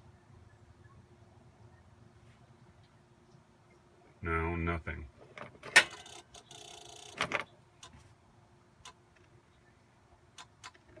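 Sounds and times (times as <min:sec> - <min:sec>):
faint scattered clicks: 0:05.4 - 0:08.0, 0:08.8 - 0:09.4, 0:10.3 - 0:11.0.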